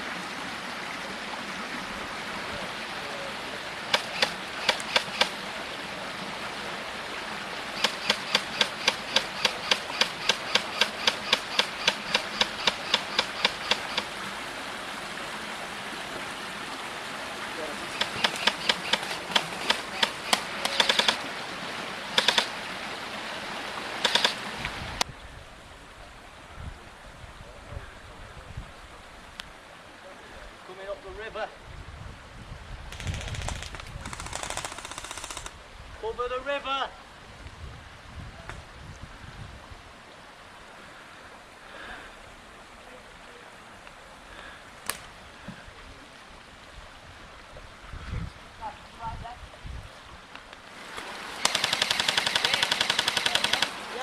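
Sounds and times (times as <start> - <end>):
stream rushing: 0.0 - 54.0
sharp click: 3.9 - 5.3, 7.8 - 14.1, 24.0 - 24.4
airsoft guns firing: 32.9 - 35.5, 51.4 - 53.8.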